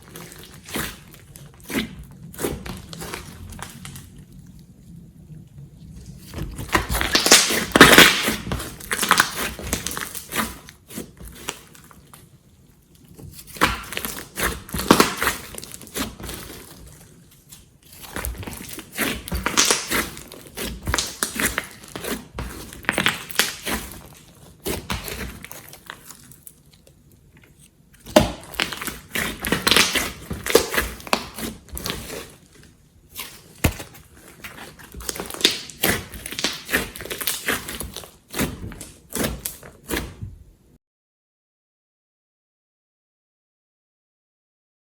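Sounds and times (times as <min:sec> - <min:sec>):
slime crackling and popping: 0:06.2 - 0:10.7, 0:13.3 - 0:26.5, 0:28.0 - 0:40.0.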